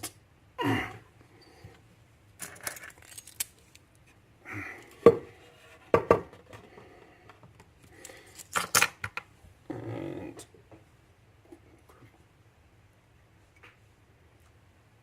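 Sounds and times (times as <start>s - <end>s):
small metal tools clinking: 2.4s - 3.8s.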